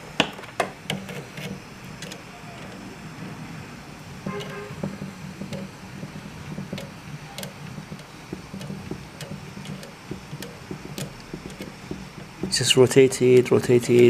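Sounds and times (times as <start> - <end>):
printer humming: 0.0 - 14.0.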